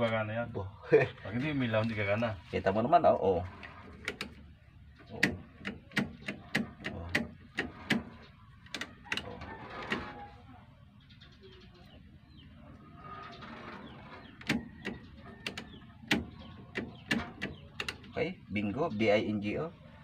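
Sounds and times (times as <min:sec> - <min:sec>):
sharp clicks and taps on wiring: 0:04.0 - 0:04.4, 0:05.0 - 0:09.3, 0:14.4 - 0:18.2
faint bird calls: 0:05.0 - 0:18.6.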